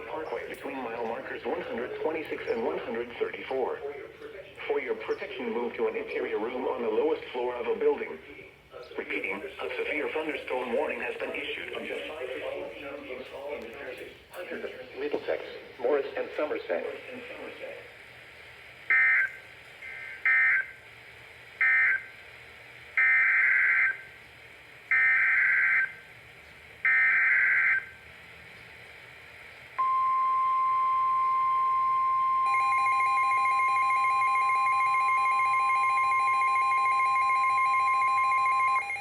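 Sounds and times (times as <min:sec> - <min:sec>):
rapidly pulsing electronic alarm: 0:18.9 - 0:20.8, 0:21.6 - 0:22.1, 0:23.0 - 0:24.1, 0:24.9 - 0:26.0, 0:26.8 - 0:28.0, 0:29.8 - 0:39.0
steady warning alarm tone: 0:18.9 - 0:20.8, 0:21.6 - 0:22.1, 0:23.0 - 0:24.1, 0:24.9 - 0:26.0, 0:26.8 - 0:28.0, 0:29.8 - 0:39.0.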